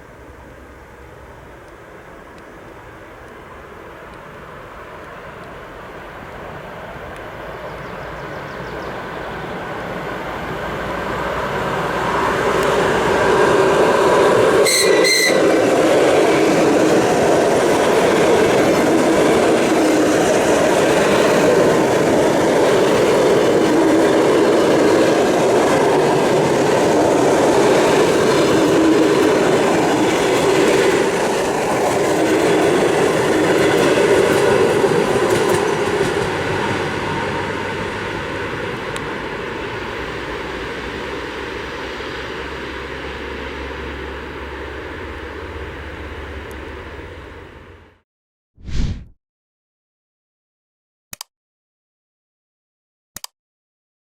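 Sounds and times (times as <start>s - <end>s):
electric train running past: 0.0s - 47.9s
rail-joint clickety-clack: 12.3s - 39.2s.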